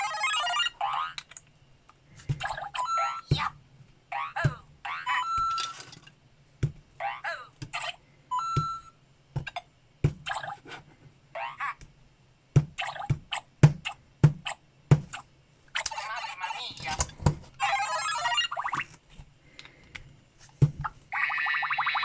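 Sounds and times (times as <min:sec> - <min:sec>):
electronic chirpy blips: 0:02.5 - 0:03.5
held electronic beep: 0:02.8 - 0:03.4, 0:05.2 - 0:05.8, 0:08.3 - 0:08.9.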